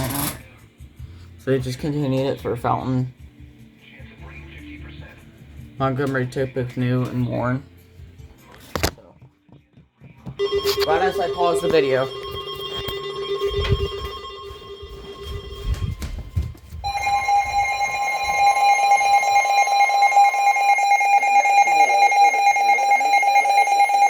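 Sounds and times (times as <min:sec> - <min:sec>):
low rapidly pulsing tone: 0:10.4 - 0:16.3
loud high alarm tone: 0:10.4 - 0:24.0.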